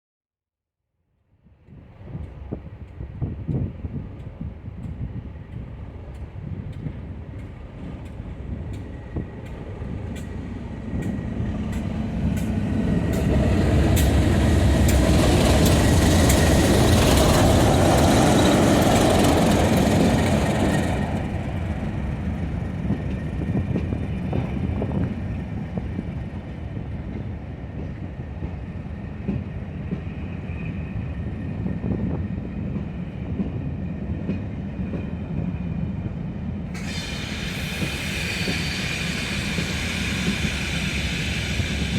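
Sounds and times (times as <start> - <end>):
diesel locomotives passing: 1.8 - 41.9
high squeal: 36.8 - 41.9.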